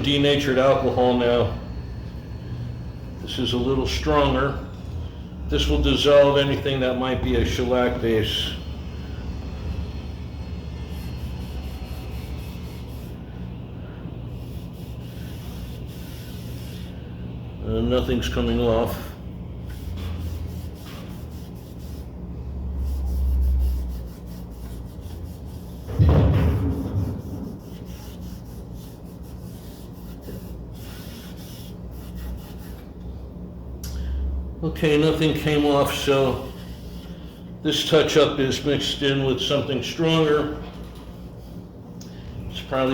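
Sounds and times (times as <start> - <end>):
low droning hum: 0.0 - 42.9
scrubbing strokes on picture frame: 10.8 - 13.2, 14.4 - 17.0, 19.7 - 25.9, 27.4 - 32.8.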